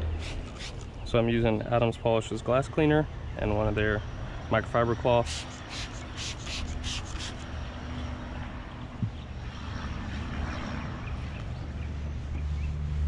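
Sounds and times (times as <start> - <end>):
spray bottle hissing: 0.2 - 0.8, 5.3 - 7.4.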